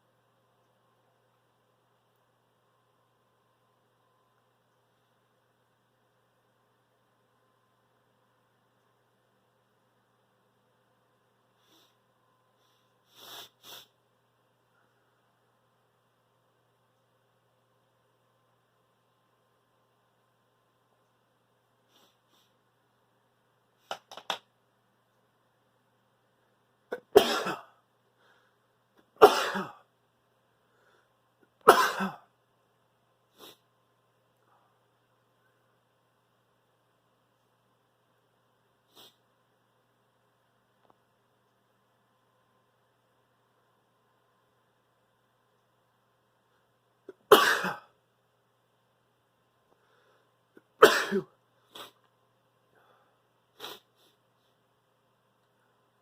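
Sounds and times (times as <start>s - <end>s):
quiet sniffs: 11.5s - 14.0s, 21.8s - 22.6s, 33.3s - 33.7s, 38.8s - 39.3s, 51.6s - 52.1s, 52.7s - 54.7s
man sneezing: 29.2s - 29.8s, 47.3s - 47.8s, 50.8s - 52.0s.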